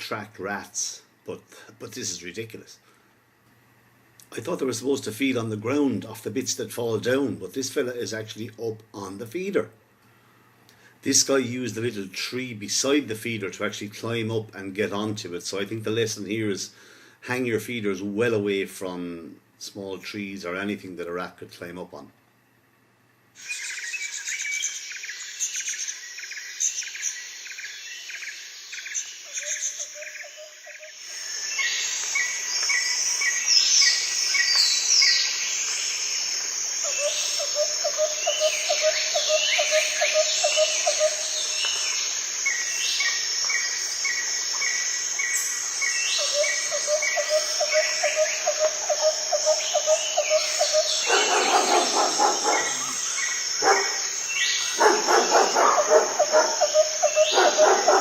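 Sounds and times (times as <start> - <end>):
steady background hiss: 0.0 - 58.0
songbirds chirping and trilling: 22.0 - 58.0.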